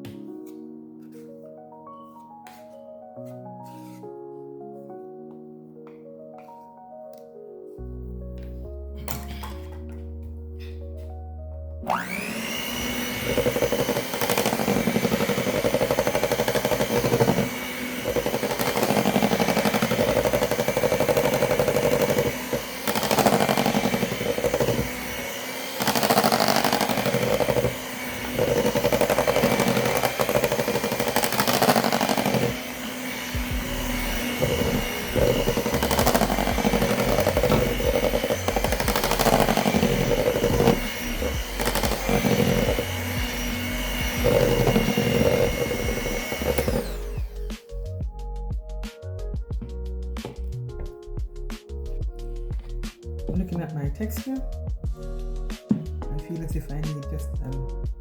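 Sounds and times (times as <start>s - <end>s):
electric mixer whine: 11.9s - 47.8s.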